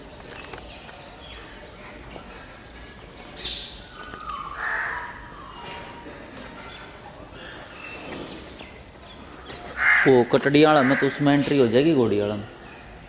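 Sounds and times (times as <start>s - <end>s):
farmyard background: 0.0s - 13.0s
crows cawing: 4.4s - 5.5s, 9.7s - 11.3s.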